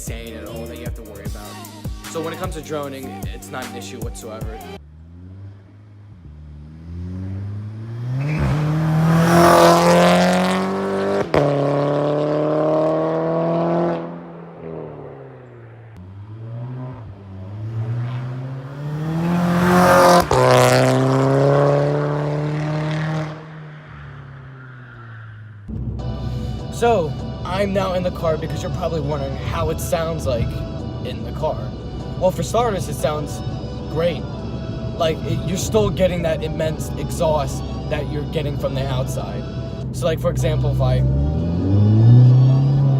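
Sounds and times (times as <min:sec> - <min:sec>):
car engine revving: 0:00.0 - 0:42.9.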